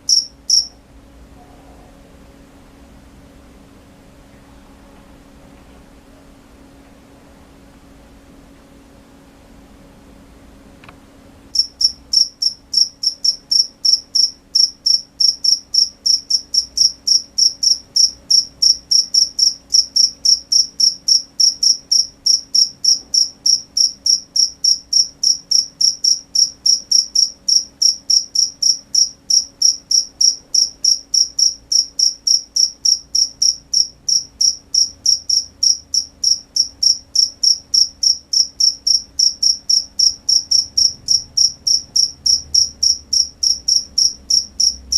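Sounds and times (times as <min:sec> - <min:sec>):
cricket chirping: 0:00.0 - 0:00.8, 0:11.6 - 0:44.9
faint low hum: 0:00.0 - 0:44.9.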